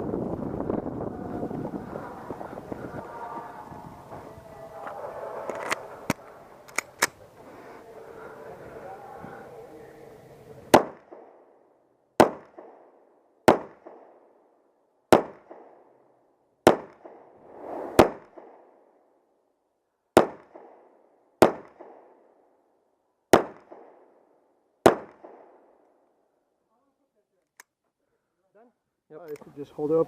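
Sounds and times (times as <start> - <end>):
pistol shots: 10.7 - 11.4, 12.2 - 14.2, 15.1 - 15.8, 20.2 - 20.8, 21.4 - 22.2, 23.3 - 24.1, 24.8 - 25.7.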